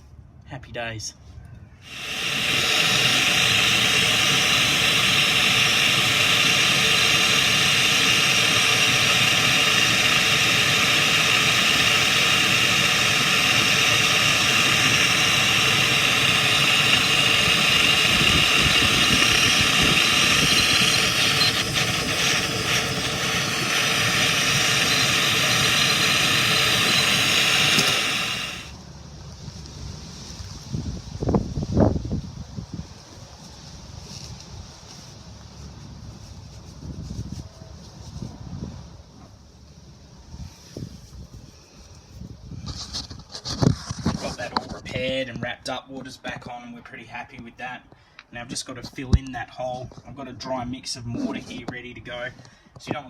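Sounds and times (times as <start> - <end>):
gas torch flame roaring: 1.8 - 28.8.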